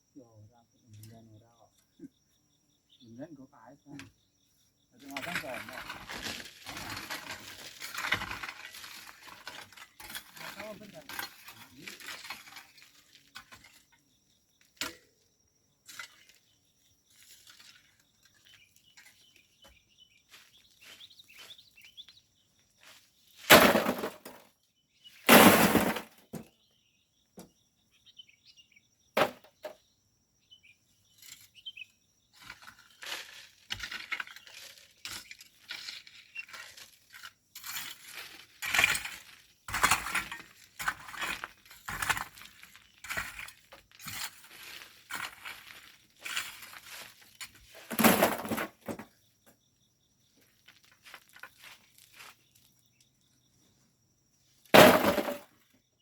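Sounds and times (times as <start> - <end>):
shovel scraping gravel: 5.0 - 13.9, 17.1 - 19.3, 22.8 - 24.4, 25.2 - 26.4, 32.4 - 49.0, 54.7 - 55.4
gritty shovel loads: 5.0 - 14.0, 15.8 - 19.6, 22.8 - 24.4, 25.0 - 26.5, 29.2 - 29.7, 32.3 - 49.2, 50.4 - 52.7, 54.6 - 55.6.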